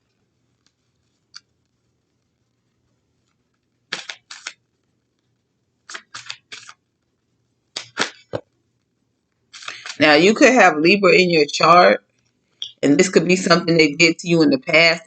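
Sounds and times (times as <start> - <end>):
cards snapping and slapping: 3.9 - 4.6, 5.9 - 6.8, 7.8 - 8.4, 9.6 - 10.0.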